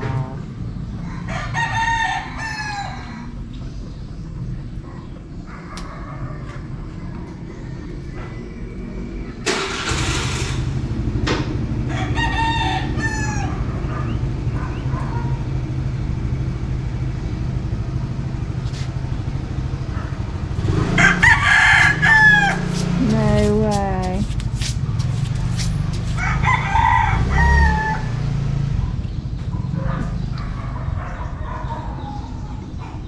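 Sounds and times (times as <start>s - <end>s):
rooster crowing: 1.2s - 3.3s, 11.9s - 13.7s, 20.9s - 23.0s, 26.1s - 28.2s
engine humming: 9.4s - 30.5s.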